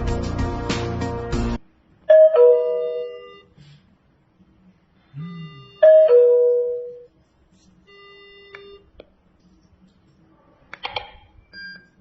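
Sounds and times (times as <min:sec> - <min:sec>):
background music: 0:00.0 - 0:01.6
doorbell ding-dong chime: 0:02.1 - 0:03.3, 0:05.8 - 0:07.0.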